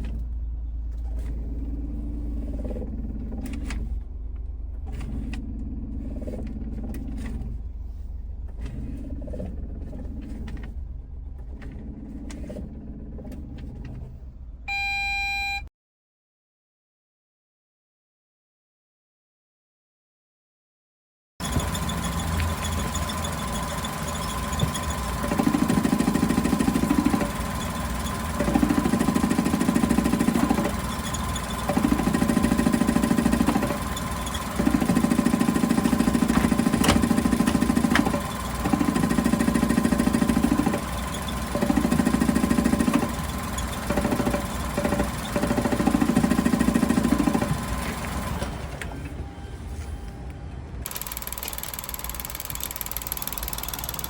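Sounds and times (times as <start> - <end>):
low engine rumble: 0.0 - 14.8, 21.4 - 54.0
car engine idling: 21.4 - 48.8.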